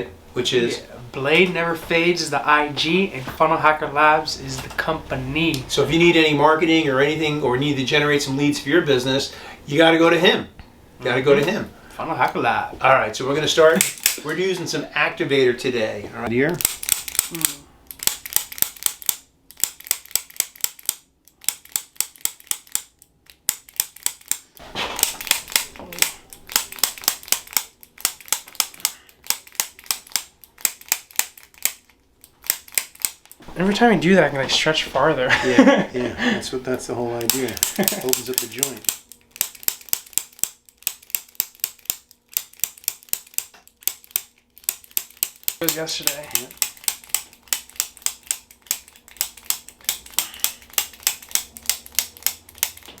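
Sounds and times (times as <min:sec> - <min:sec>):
adjusting instrument sharp clicks: 0:16.5 - 0:33.4, 0:37.2 - 0:53.0.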